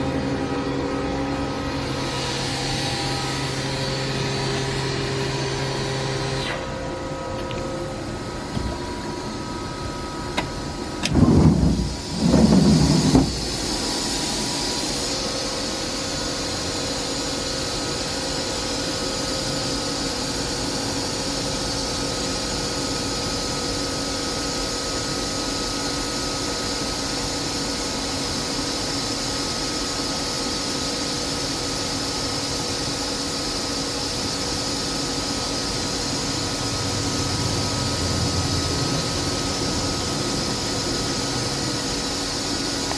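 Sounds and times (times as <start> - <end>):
machining center humming: 0.0 - 17.9, 34.8 - 42.9.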